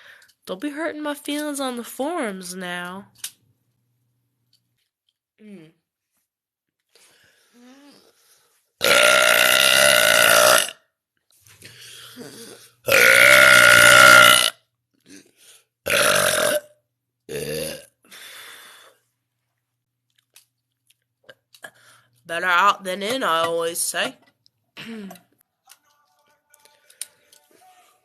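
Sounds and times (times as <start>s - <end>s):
person burping loudly: 8.8s - 10.8s, 12.1s - 18.0s.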